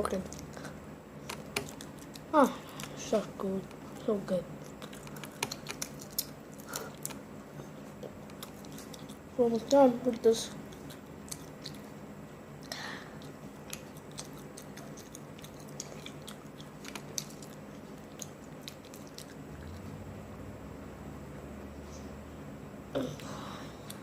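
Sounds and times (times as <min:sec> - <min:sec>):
faint steady hum: 0:00.0 - 0:24.0
person chewing and crunching: 0:01.6 - 0:03.0, 0:04.6 - 0:09.8, 0:10.6 - 0:12.0, 0:12.6 - 0:20.0.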